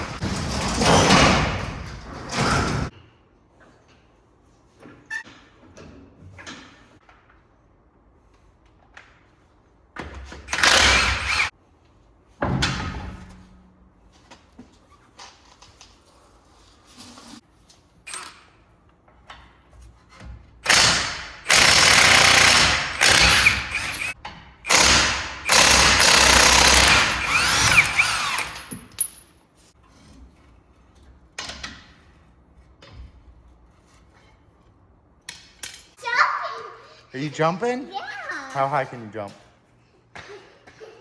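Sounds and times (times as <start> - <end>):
power tool bursts: 10.5 - 11.5, 20.6 - 28.7.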